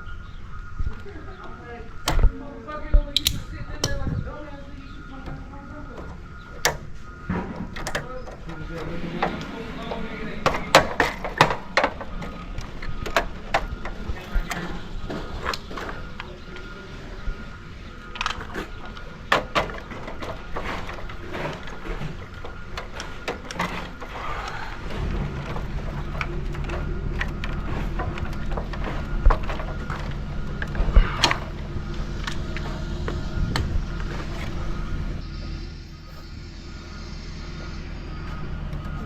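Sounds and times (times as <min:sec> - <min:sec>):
engine running with low hum: 0:03.6 - 0:39.0
clicks and knocks: 0:05.1 - 0:16.8, 0:17.9 - 0:35.3.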